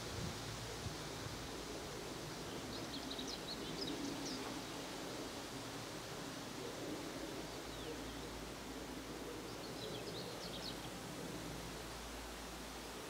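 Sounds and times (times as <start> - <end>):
wind rumble on microphone: 0.0 - 3.2.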